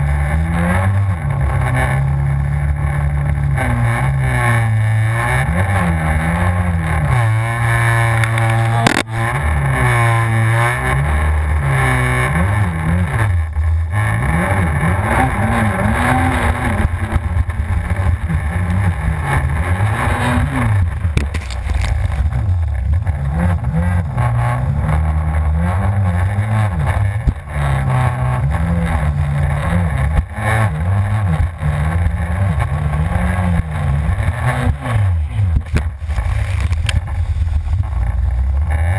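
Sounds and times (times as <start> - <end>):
jet ski engine revving: 0.0 - 38.9.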